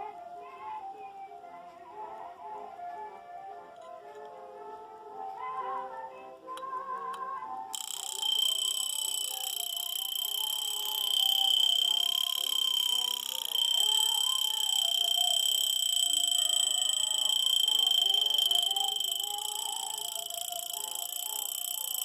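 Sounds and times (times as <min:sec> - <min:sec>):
alarm watch buzzing ring: 0:07.7 - 0:22.0.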